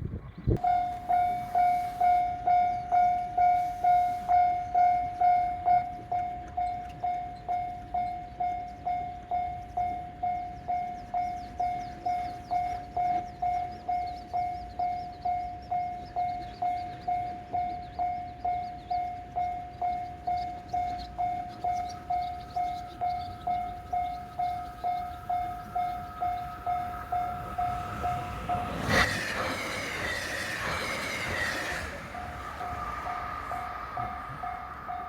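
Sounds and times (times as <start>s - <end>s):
higher-pitched crossing bell: 0.6s - 29.1s, 32.2s - 35.0s
level crossing alarm: 0.6s - 35.0s
train rushing past: 21.0s - 35.0s.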